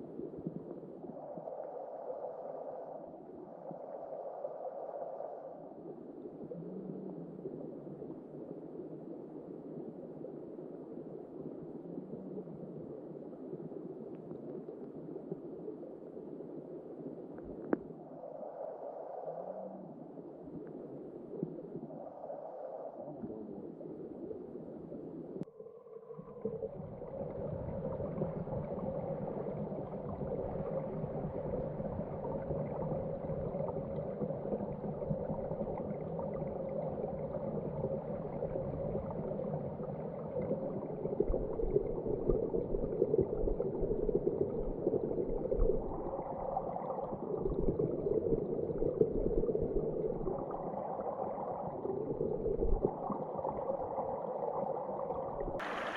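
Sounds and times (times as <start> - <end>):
river water rushing and gurgling: 55.6 - 55.9.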